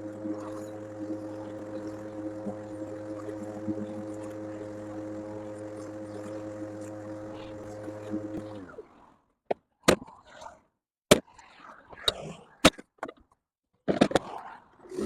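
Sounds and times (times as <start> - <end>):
electric lawn mower motor running: 0.0 - 8.8.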